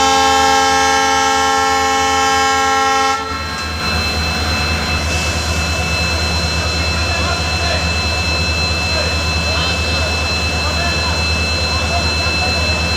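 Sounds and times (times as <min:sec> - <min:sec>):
locomotive horn blast: 0:00.0 - 0:03.6.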